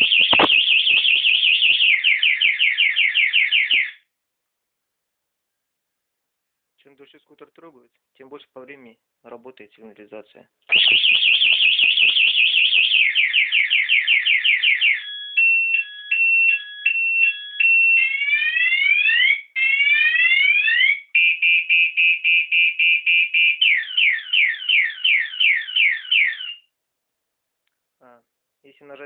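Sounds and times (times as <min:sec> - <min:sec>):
scooter alarm siren: 0:00.0 - 0:04.1, 0:10.7 - 0:26.7.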